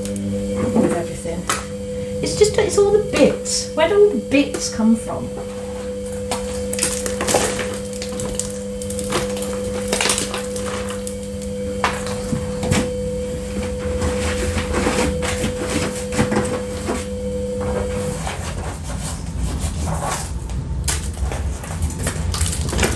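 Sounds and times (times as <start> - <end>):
steady hum: 0.0 - 22.9
ice cracking and scraping: 6.3 - 12.9, 18.4 - 22.9.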